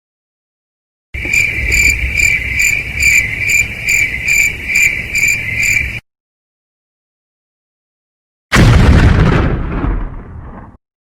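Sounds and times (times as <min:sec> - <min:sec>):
crickets chirping: 0:01.2 - 0:06.0.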